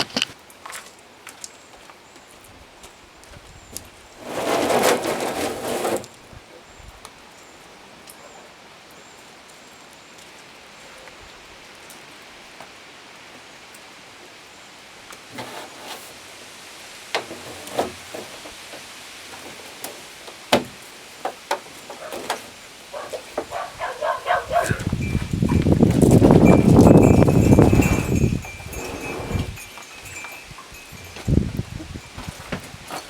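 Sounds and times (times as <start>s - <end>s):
light rain hissing: 3.8s - 25.0s, 28.7s - 31.0s
rain barrel knocking and bumping: 17.1s - 23.6s, 24.5s - 28.6s.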